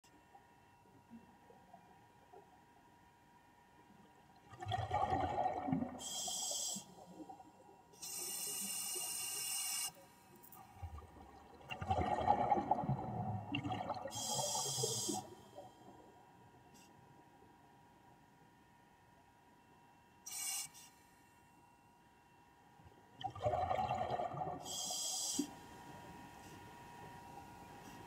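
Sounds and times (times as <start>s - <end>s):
exhaled bubbles gurgling underwater: 4.4s - 7.4s, 10.6s - 15.7s, 23.2s - 24.8s
regulator hissing on inhale: 6.0s - 7.0s, 8.0s - 10.0s, 14.1s - 15.6s, 24.6s - 25.6s.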